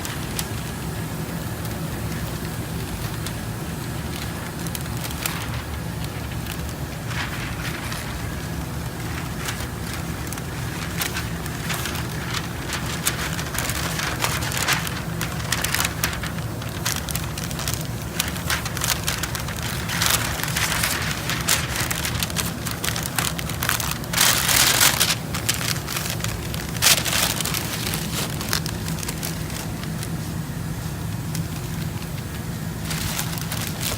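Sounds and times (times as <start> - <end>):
masking paper rustling: 0.0 - 33.9
masking tape crackling: 0.0 - 33.9
low hum: 5.2 - 30.0.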